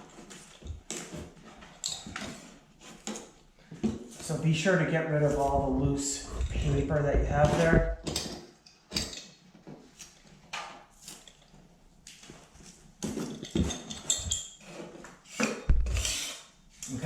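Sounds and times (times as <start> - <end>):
knife scraping paper off drywall: 14.4 - 16.6.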